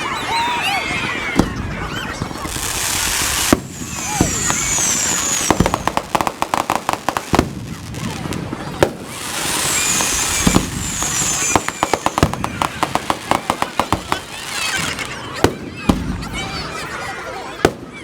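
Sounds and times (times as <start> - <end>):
firework crackling: 0.3 - 18.0
firework shells bursting: 2.2 - 16.2
hiss: 3.0 - 5.9, 9.1 - 12.7.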